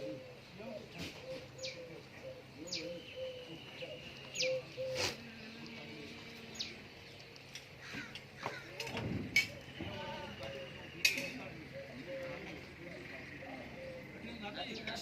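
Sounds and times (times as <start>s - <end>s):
lower wavering bird notes: 1.3s - 7.0s, 9.6s - 14.9s.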